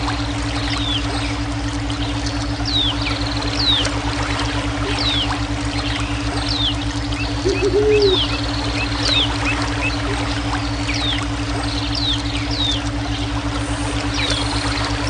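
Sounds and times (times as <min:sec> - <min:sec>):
pulsing low hum tones: 0:00.0 - 0:15.0
running water: 0:00.0 - 0:15.0
bird chirps: 0:04.8 - 0:13.2.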